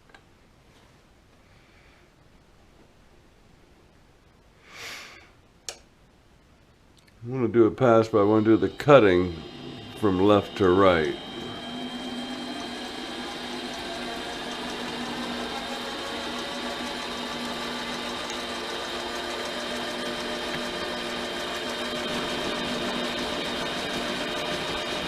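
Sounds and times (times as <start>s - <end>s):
metal lathe humming and whining: 7.8s - 25.0s.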